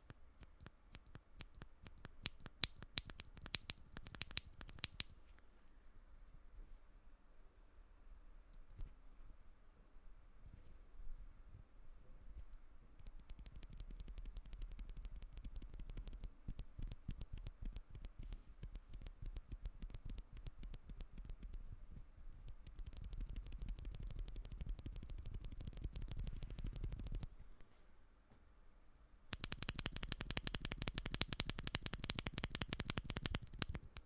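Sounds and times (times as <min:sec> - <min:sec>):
fast typing on mechanical keyboard: 0:13.0 - 0:21.6, 0:22.5 - 0:27.3, 0:29.3 - 0:34.0.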